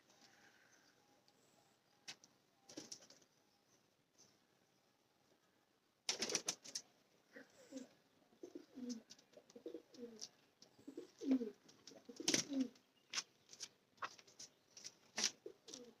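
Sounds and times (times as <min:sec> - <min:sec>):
pigeons cooing: 0:07.3 - 0:12.8, 0:15.2 - 0:16.0.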